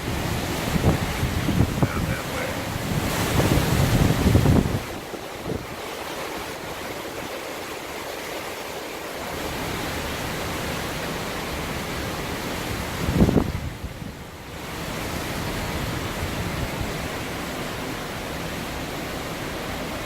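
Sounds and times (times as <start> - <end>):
wind buffeting microphone: 0.0 - 7.5, 12.3 - 17.7
steady rush of wind: 0.0 - 20.0.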